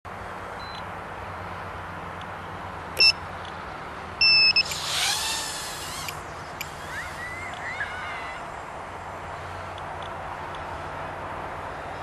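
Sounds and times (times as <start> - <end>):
high buzzer beeps: 4.2 - 4.7
drone motors whining: 4.3 - 8.5.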